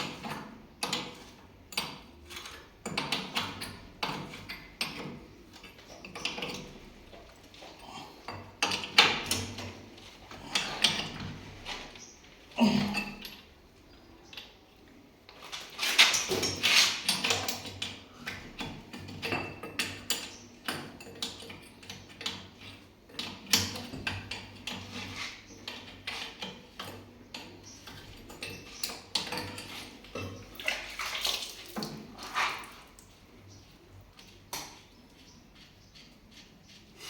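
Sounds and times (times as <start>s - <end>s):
water sloshing and splashing: 29.4s - 33.4s.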